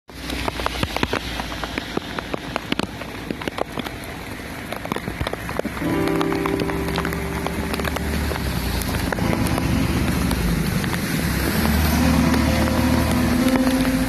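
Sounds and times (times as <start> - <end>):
rain on hard surface: 0.1 - 14.0.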